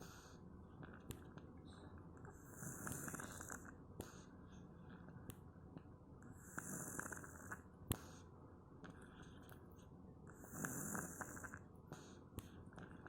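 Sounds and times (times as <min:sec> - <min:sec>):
cat snoring: 0:02.3 - 0:04.2, 0:06.3 - 0:07.6, 0:10.3 - 0:12.2.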